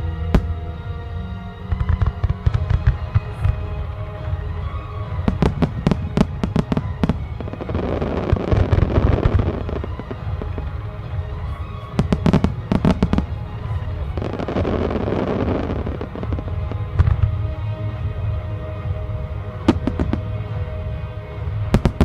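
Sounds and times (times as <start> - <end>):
firework crackling: 0.0 - 22.0
music: 0.0 - 22.0.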